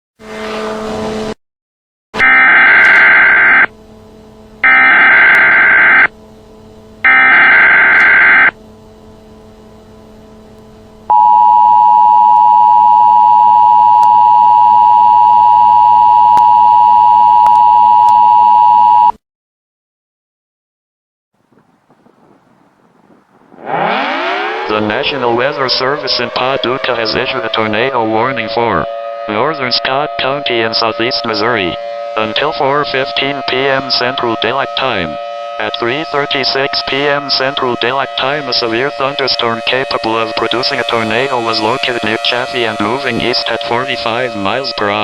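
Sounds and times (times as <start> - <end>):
two-tone attention signal: 2.2 - 3.7, 4.6 - 6.1, 7.1 - 8.6, 11.1 - 19.1
digital data screech: 7.1 - 8.5.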